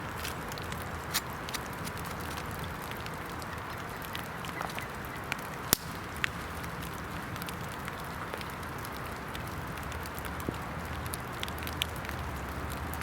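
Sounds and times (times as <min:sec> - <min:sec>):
sharp snaps: 0:05.7 - 0:06.3.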